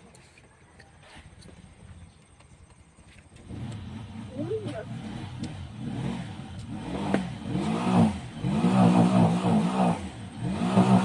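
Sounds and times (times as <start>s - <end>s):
engine revving: 3.4s - 11.0s.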